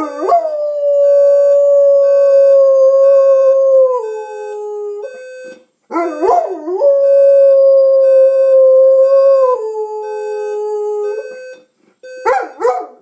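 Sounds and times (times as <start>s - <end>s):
alarm clock beeping: 0.0s - 12.7s
dog yelping: 12.3s - 13.0s.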